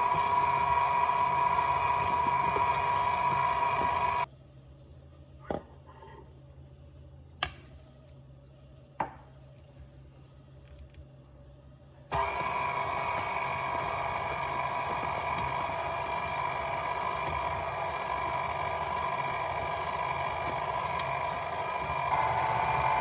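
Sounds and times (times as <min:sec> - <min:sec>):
small electric motor humming: 0:00.0 - 0:04.3, 0:12.2 - 0:23.0.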